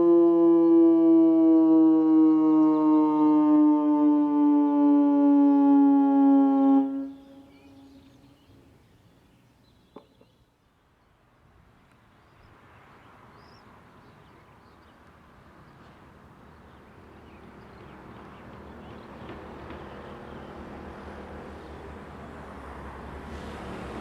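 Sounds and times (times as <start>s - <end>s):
rushing noise: 20.8s - 24.0s.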